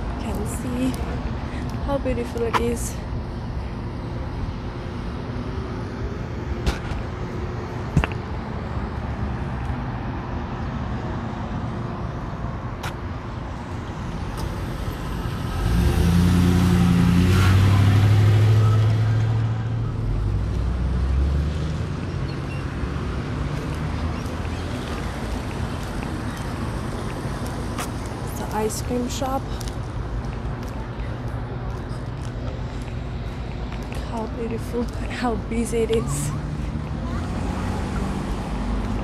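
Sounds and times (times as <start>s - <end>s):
street traffic: 0.0s - 39.0s
vehicle passing close by: 14.7s - 25.3s.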